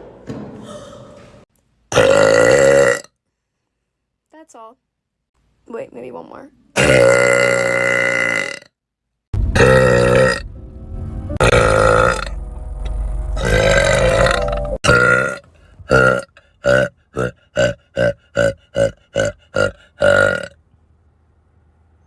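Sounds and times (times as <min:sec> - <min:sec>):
woman burping: 0:01.9 - 0:03.1, 0:06.8 - 0:08.7, 0:13.4 - 0:20.5.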